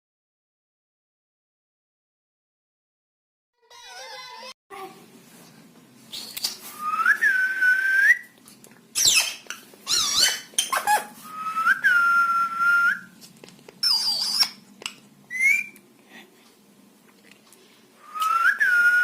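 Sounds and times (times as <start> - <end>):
parrot long whistle: 6.2 - 8.3, 11.2 - 13.2, 13.8 - 14.6, 15.3 - 15.8, 18.0 - 19.0.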